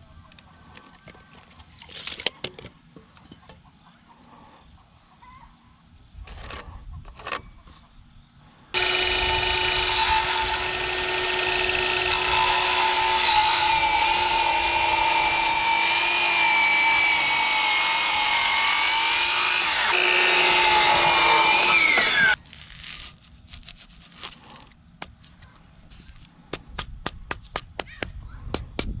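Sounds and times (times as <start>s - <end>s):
power tool cutting wood: 8.8s - 22.4s.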